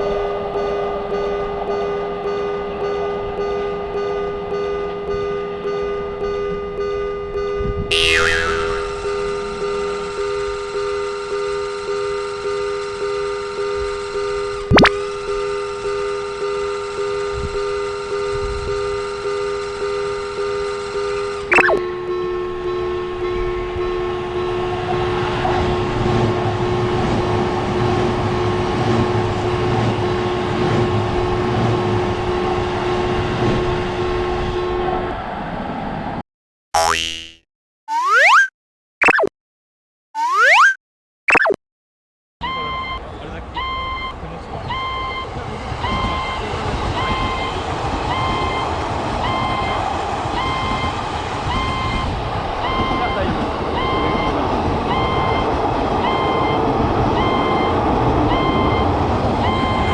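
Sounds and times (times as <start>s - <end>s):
train rumble and rail noise: 0.0s - 7.9s, 21.8s - 36.2s, 42.4s - 59.9s
steady two-note hum: 7.9s - 34.9s.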